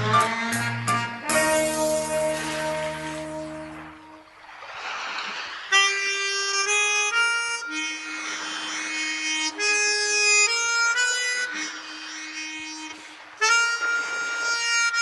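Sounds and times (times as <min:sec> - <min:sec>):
harmonica playing slow tune: 0:00.0 - 0:04.2, 0:05.7 - 0:15.0.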